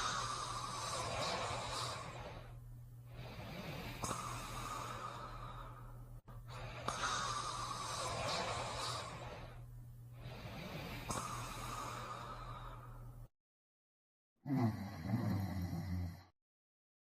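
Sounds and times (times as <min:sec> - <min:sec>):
heavy breathing of sleeper: 0:00.0 - 0:13.3
steady low hum: 0:00.0 - 0:13.3.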